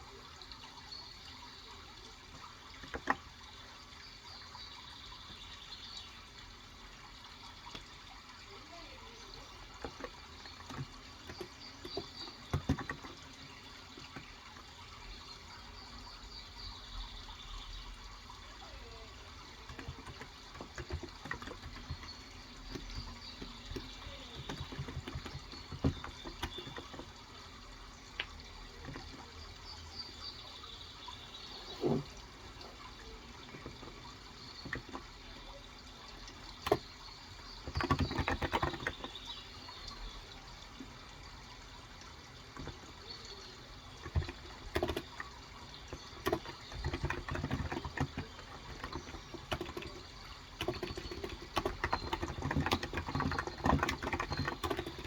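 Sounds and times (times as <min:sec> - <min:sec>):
running water: 0:00.0 - 0:55.0
faint bird chirps: 0:08.4 - 0:40.8, 0:42.6 - 0:55.0
keyboard typing: 0:09.3 - 0:14.4, 0:19.4 - 0:27.2, 0:36.2 - 0:36.9, 0:37.5 - 0:39.3, 0:42.6 - 0:55.0.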